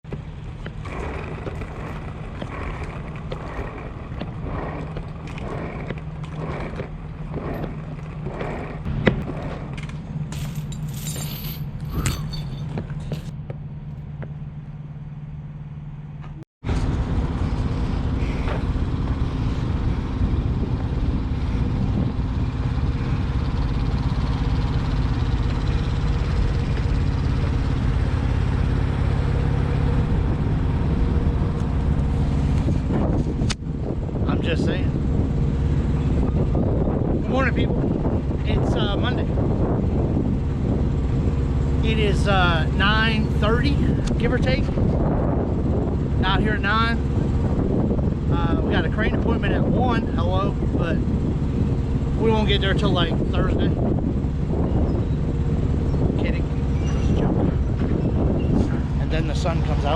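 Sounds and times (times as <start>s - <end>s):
diesel truck engine running: 0.0s - 59.9s.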